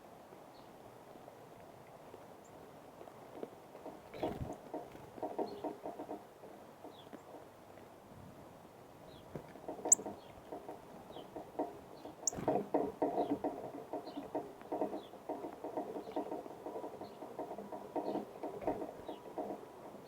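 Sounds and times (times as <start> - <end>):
birds pecking and scratching seed: 1.1 - 8.0, 9.1 - 20.0
high bird chip calls: 12.0 - 12.6.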